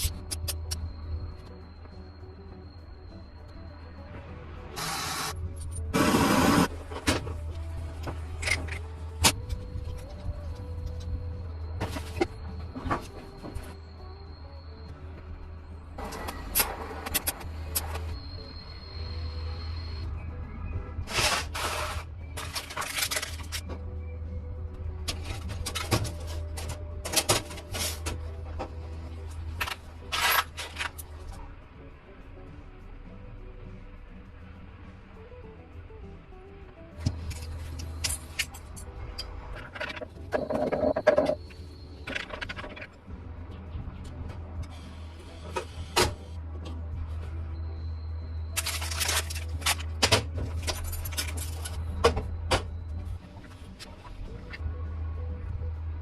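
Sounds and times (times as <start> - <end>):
background music: 0.0 - 56.0
metallic clinks and clatters: 37.2 - 43.0, 48.5 - 52.0.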